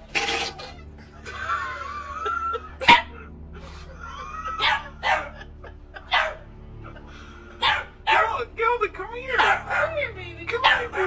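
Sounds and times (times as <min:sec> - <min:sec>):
dog yelping barks: 0:02.8 - 0:03.2, 0:04.6 - 0:05.5, 0:06.1 - 0:06.4, 0:07.6 - 0:08.4, 0:09.4 - 0:10.0, 0:10.6 - 0:11.0.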